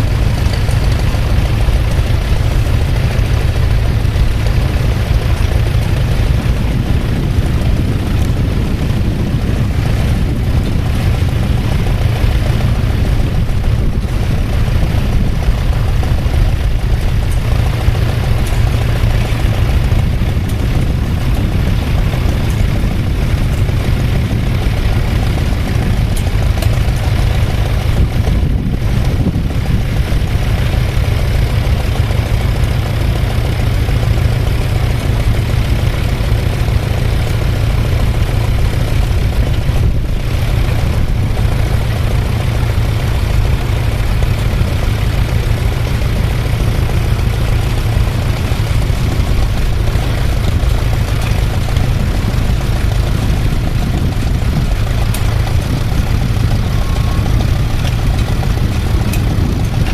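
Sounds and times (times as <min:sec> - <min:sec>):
tractor engine rumbling: 0:00.0 - 0:59.9.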